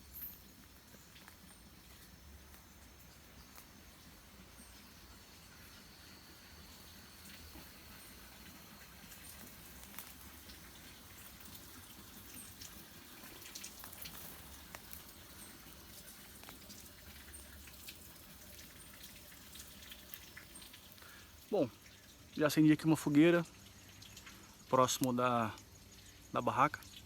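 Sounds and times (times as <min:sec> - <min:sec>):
campfire crackling and popping: 0:00.0 - 0:03.8, 0:08.4 - 0:22.3.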